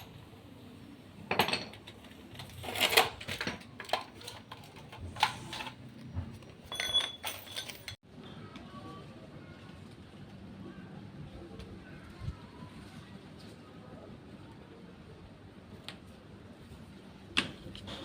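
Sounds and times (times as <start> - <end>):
knocks and metallic clinks: 1.3 - 8.0.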